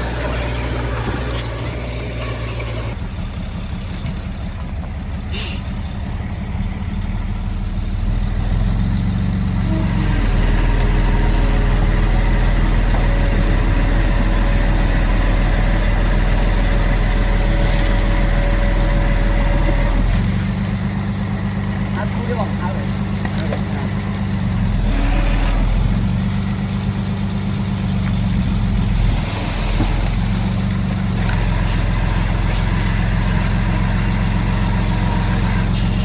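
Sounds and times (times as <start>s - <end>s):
heavy diesel engine running: 0.0s - 36.0s
short hiss: 5.3s - 5.7s.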